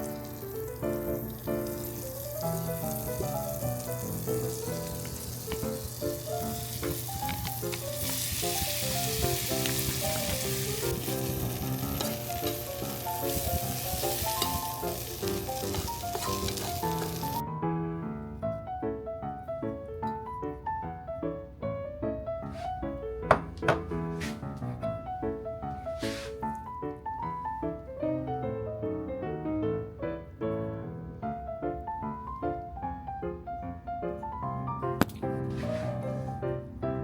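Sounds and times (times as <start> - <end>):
food sizzling in a frying pan: 0.0 - 17.4
light background music: 0.0 - 37.0.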